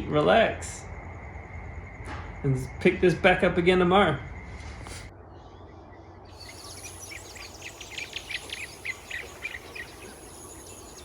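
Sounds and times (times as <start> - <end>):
outdoor ambience: 0.0 - 11.0
small birds chirping: 5.2 - 11.0.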